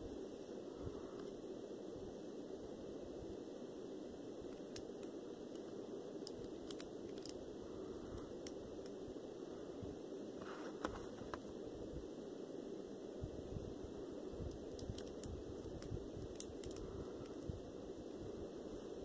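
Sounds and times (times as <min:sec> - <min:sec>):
steady low hiss: 0:00.0 - 0:19.0
packaging clicks and crinkles: 0:04.5 - 0:07.4, 0:14.5 - 0:16.8.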